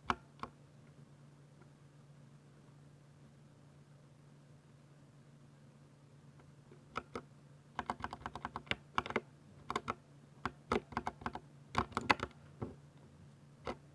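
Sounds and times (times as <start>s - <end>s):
mechanical keyboard typing: 7.8s - 12.3s.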